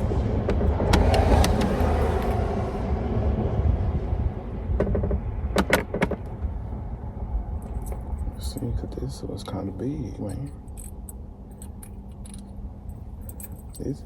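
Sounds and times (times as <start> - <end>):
low rumble: 0.0 - 8.9.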